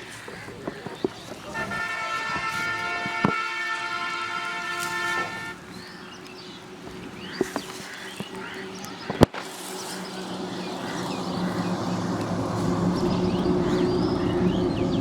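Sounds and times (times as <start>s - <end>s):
vehicle horn blast: 1.5s - 5.6s.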